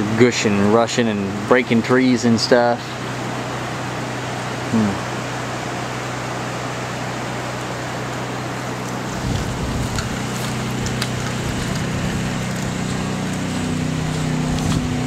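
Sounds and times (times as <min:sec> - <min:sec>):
steady low hum: 0:00.0 - 0:15.0
flooded river rushing: 0:03.0 - 0:15.0
wind rumbling on microphone: 0:08.9 - 0:15.0.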